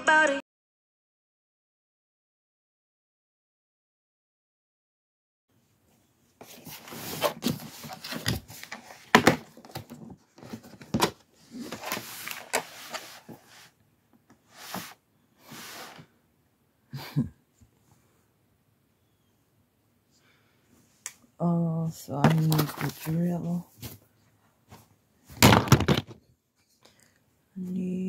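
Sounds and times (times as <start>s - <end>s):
tools rustling and scraping: 6.4s - 13.8s.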